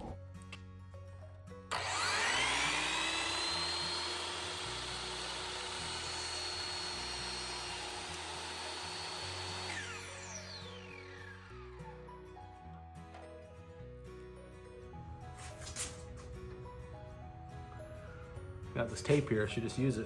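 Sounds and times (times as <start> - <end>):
background music: 0.0 - 20.0
miter saw motor whine: 1.7 - 12.0.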